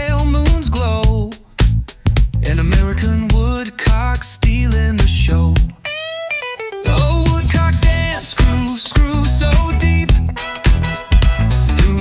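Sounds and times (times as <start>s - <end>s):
funk music: 0.0s - 12.0s
plucked electric guitar: 5.6s - 12.0s.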